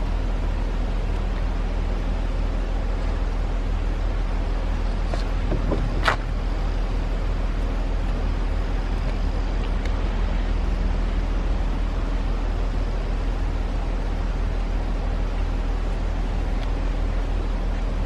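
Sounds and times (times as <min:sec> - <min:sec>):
heavy diesel machinery droning: 0:00.0 - 0:18.0.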